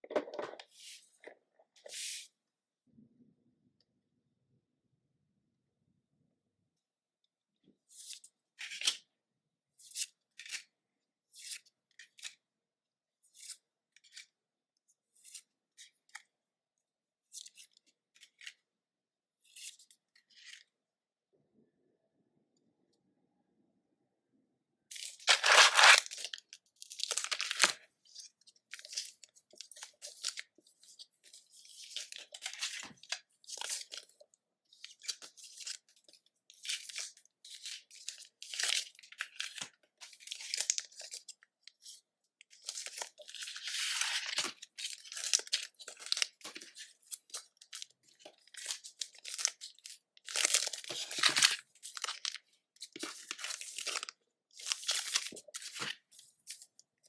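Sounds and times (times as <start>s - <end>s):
foil wrappers crinkling and tearing: 25.2s - 26.3s, 27.0s - 27.8s.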